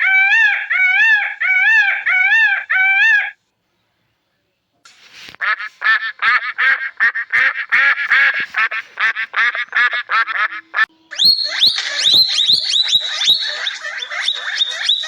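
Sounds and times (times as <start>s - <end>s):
high-pitched animal call: 0.0s - 3.4s, 11.0s - 15.0s
duck quacking: 5.4s - 15.0s.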